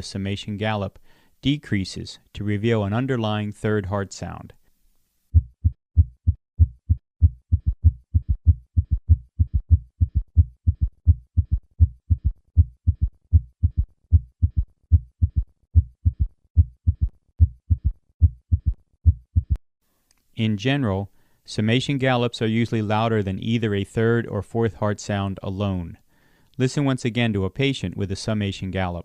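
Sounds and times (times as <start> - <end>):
heartbeat thuds: 5.3 - 19.6.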